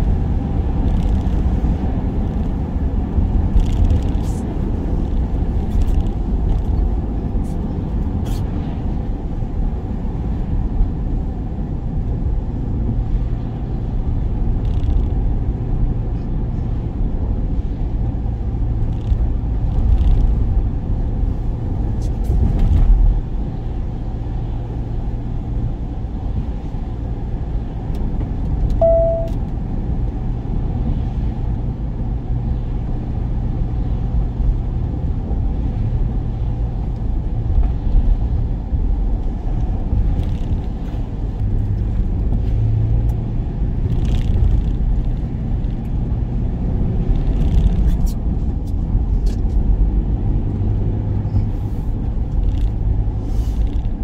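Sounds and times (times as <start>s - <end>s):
van engine and road rumble: 0.0s - 54.0s
brief single tone: 28.8s - 29.4s.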